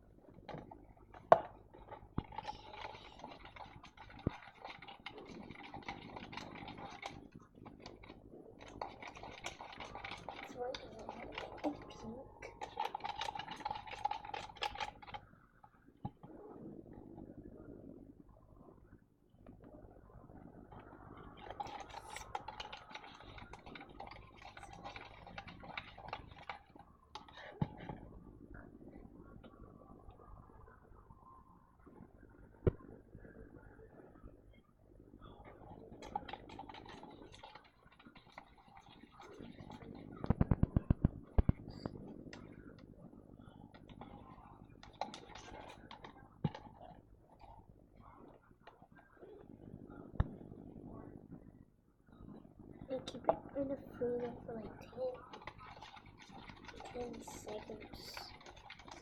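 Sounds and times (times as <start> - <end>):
small clicks taps and scrapes: 0.3 - 16.4, 20.7 - 28.2, 35.4 - 49.4, 52.1 - 59.0
scratchy scraping and rustling: 52.9 - 59.0.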